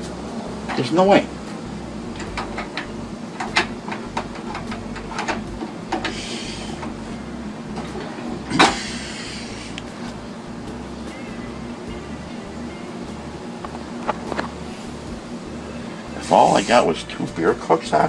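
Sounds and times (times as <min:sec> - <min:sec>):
gas hissing: 0:00.0 - 0:18.0
clicks and knocks of tank fittings: 0:02.2 - 0:06.2.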